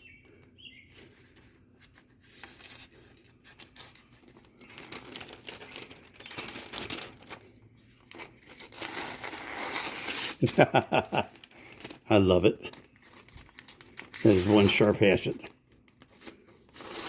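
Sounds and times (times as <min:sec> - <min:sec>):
hatchet slicing paper: 0:08.1 - 0:10.8, 0:16.0 - 0:17.0.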